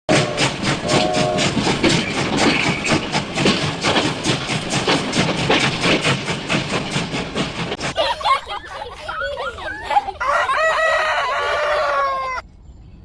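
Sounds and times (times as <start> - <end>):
short whistle-like tone: 0.1 - 1.6
miniature steam train clattering: 0.1 - 10.3.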